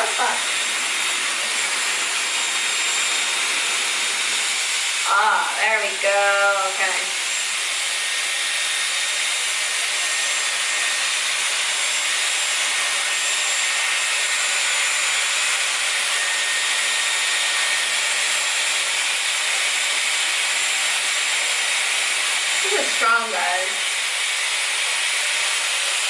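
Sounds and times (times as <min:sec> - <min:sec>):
high motor whine: 0:00.0 - 0:20.7
hair styler blowing air: 0:00.0 - 0:26.0.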